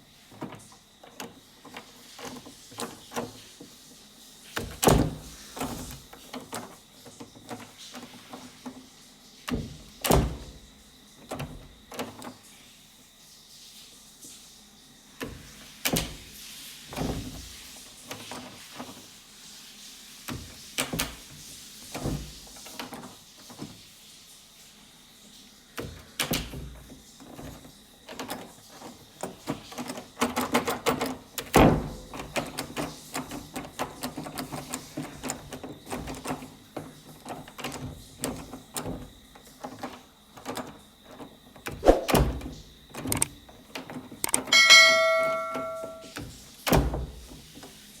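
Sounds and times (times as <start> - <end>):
door latches clicking and rattling: 0.3 - 3.8, 4.6 - 8.8, 9.5 - 12.4, 15.2 - 19.0, 20.3 - 23.7, 25.8 - 47.8
bell-like ding: 44.5 - 46.1.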